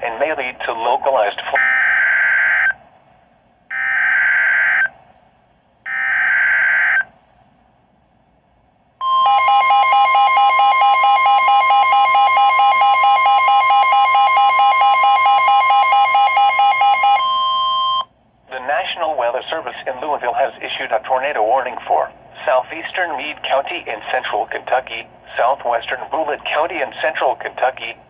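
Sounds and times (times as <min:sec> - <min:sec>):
two-tone alarm with flutter: 0:09.0 - 0:18.0.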